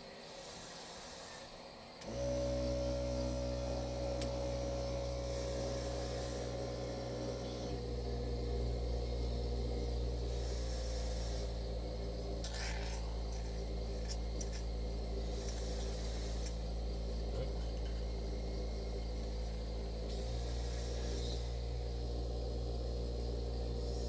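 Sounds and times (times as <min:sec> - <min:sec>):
faint air hiss: 0:00.0 - 0:02.1
machine motor hum: 0:01.9 - 0:24.0.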